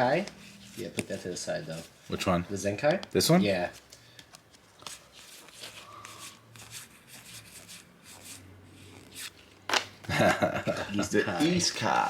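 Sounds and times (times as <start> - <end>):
trading cards sliding: 3.8 - 9.9.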